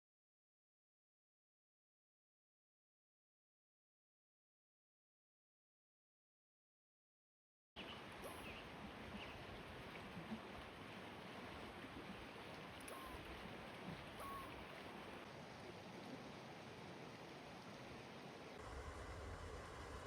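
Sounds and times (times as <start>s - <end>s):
creek water running: 7.8s - 20.0s
faint short chirps: 8.2s - 8.6s, 12.9s - 13.2s, 14.2s - 14.6s.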